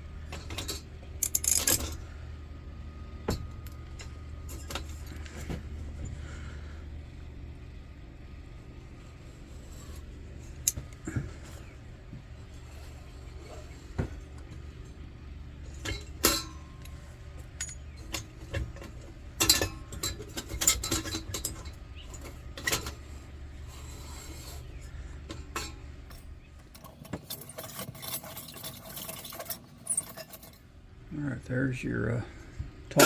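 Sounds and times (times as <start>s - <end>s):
steady low hum: 0.0s - 33.0s
metallic clinks and knocks: 0.2s - 2.1s, 12.4s - 23.2s, 23.8s - 30.6s.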